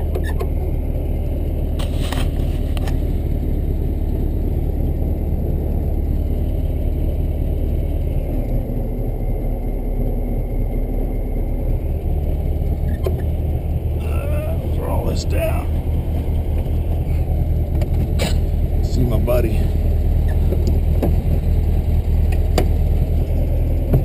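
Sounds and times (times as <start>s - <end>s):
car engine running: 0.0s - 24.0s.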